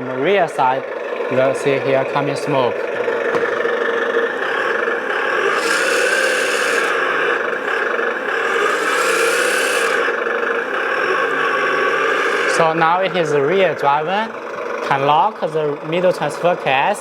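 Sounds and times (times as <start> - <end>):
simulated engine idling: 0.0 - 17.0
rising hiss: 3.1 - 13.5.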